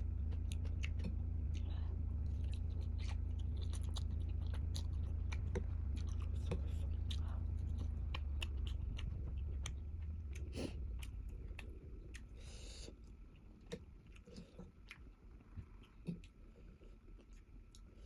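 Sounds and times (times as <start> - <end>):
chewing noodles: 0.0 - 18.0
low hum: 0.0 - 18.0
breathy hiss: 12.3 - 13.0
wet mouth clicks: 15.6 - 16.4.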